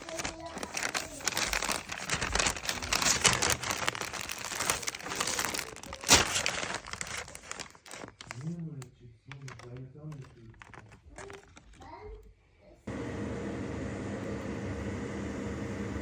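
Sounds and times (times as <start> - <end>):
crinkling and crackling: 0.0 - 12.8.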